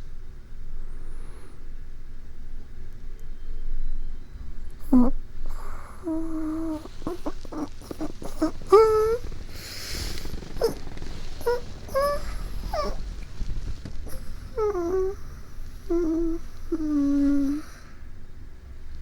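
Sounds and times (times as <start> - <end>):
breaths: 0.8 - 1.9, 5.4 - 18.2
small mouth clicks: 4.8 - 13.0
woman humming and groaning: 15.9 - 17.6.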